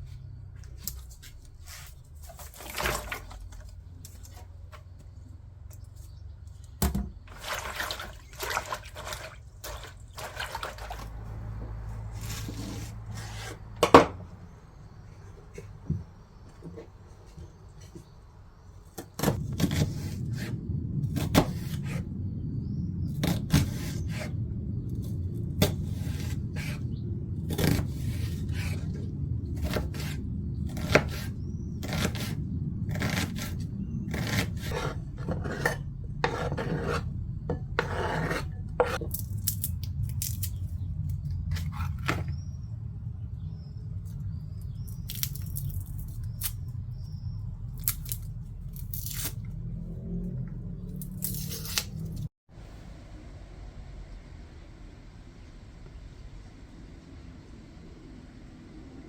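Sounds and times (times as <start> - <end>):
steady low hum: 9.3 - 51.4.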